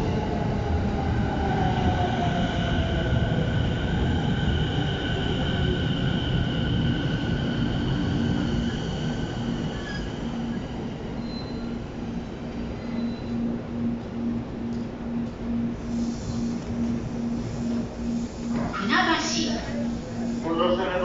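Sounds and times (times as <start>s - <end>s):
pulsing low tone: 9.2s - 18.8s.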